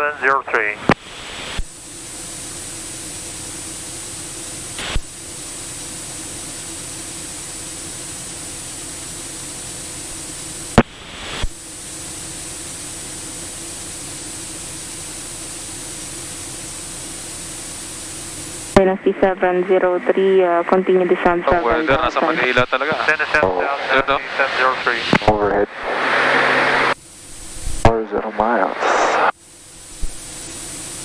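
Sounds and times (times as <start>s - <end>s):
radio intercom hiss: 0.0s - 1.7s, 4.8s - 5.8s, 10.0s - 11.6s, 17.4s - 31.0s
faint steady drone: 0.0s - 31.0s
radio transmission clicks: 10.8s - 11.6s, 18.7s - 27.0s.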